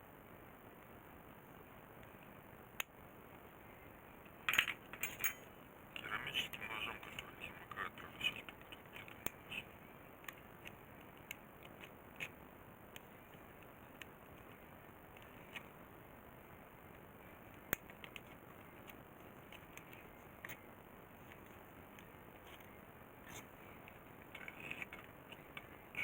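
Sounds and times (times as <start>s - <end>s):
steady low hiss: 0.0s - 26.0s.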